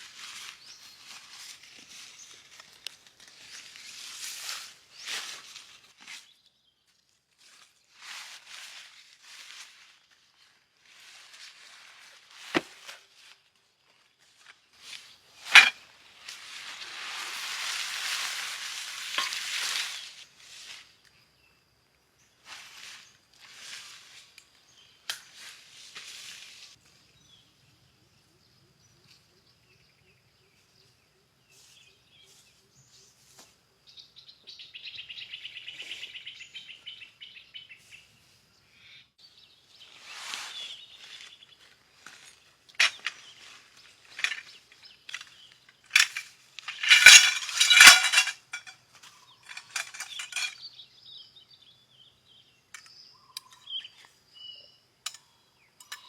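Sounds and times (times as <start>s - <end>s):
loud rustling: 45.9s - 48.7s
bird calls: 49.0s - 56.0s.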